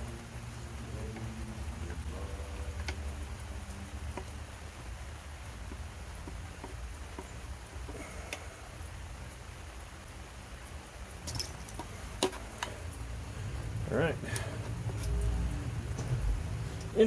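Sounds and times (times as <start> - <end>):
tools and engine parts clicking: 11.1 - 13.0
low rumble: 12.9 - 17.0.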